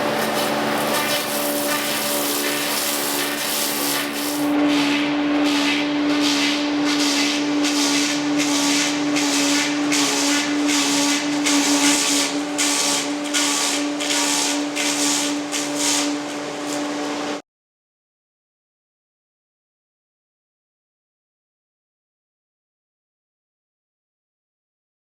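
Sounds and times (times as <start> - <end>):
lathe cutting log hiss: 0.0 - 4.6, 5.5 - 17.4
motor hum: 0.0 - 13.6.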